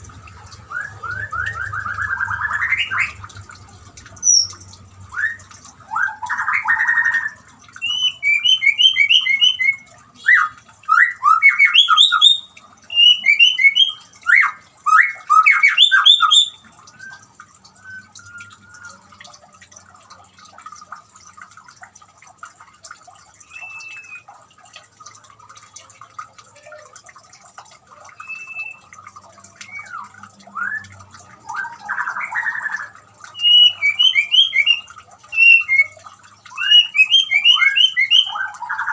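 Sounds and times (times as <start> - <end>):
faint trickle of water: 0.0 - 38.9
bird singing whistled trills: 0.7 - 3.2, 4.2 - 19.1, 23.4 - 24.3, 28.1 - 28.9, 29.6 - 30.9, 31.5 - 38.9.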